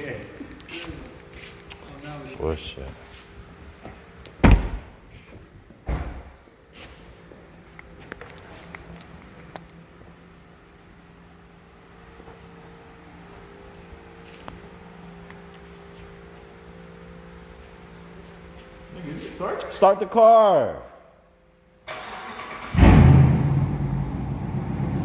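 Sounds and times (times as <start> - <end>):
low electrical hum: 0.0 - 21.9
keys jingling: 0.2 - 1.9, 6.7 - 9.9, 14.2 - 14.7
heavy thumps: 4.4 - 5.1.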